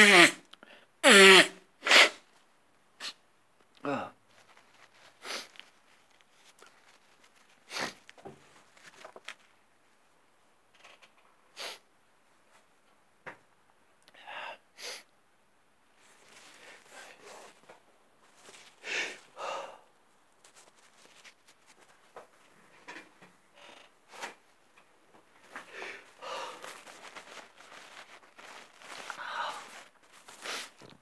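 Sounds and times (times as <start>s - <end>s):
man blowing his nose: 0.0s - 0.4s, 1.0s - 2.2s, 7.7s - 8.0s, 28.9s - 30.8s
man sniffling: 18.6s - 19.9s, 25.5s - 26.9s.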